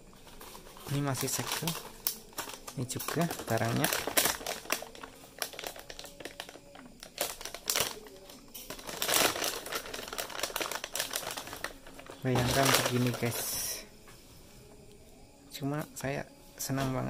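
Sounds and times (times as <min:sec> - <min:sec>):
plastic packaging crinkling: 0:00.2 - 0:13.8.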